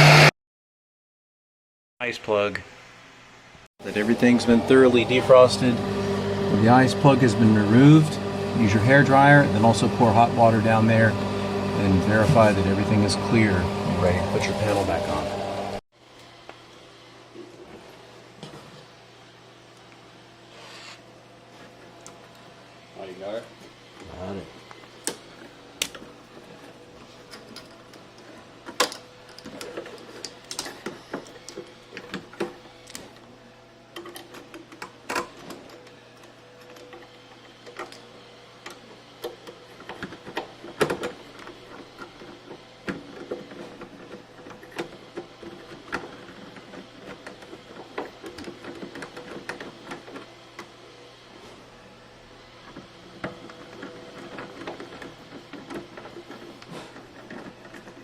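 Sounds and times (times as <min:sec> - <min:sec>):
clicks and knocks of parts handled: 0:24.7 - 0:33.2.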